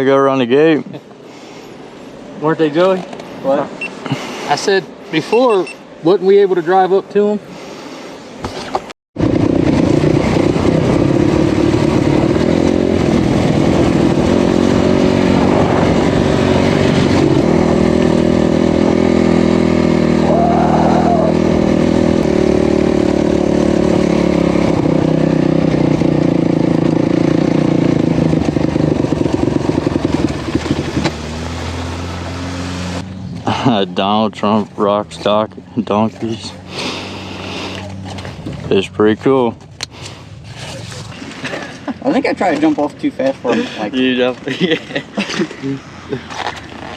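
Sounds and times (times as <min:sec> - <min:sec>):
off-road vehicle engine running: 0:09.2 - 0:44.6.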